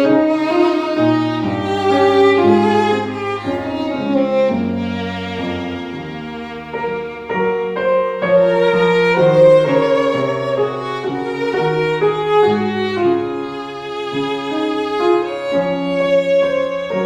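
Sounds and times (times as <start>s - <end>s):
violin melody: 0.0s - 17.0s
held low string notes: 8.4s - 13.5s.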